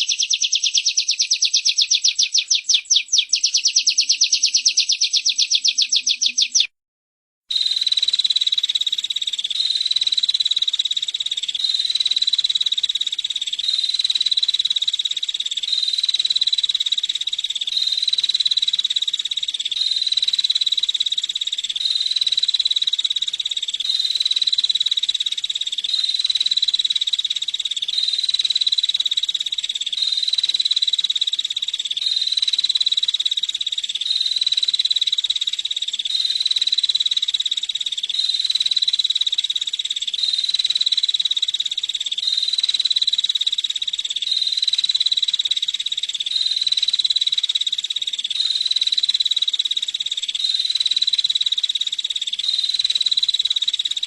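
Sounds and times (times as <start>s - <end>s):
bird buzzy trill: 0.0s - 6.7s.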